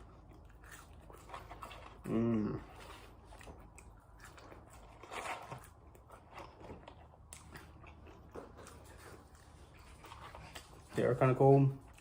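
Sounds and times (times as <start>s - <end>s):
chewing and crunching fries: 0.0s - 12.0s.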